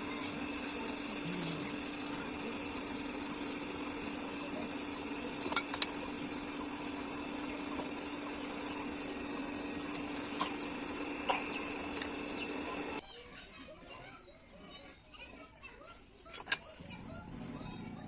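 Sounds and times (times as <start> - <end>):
machine humming: 0.0 - 13.0.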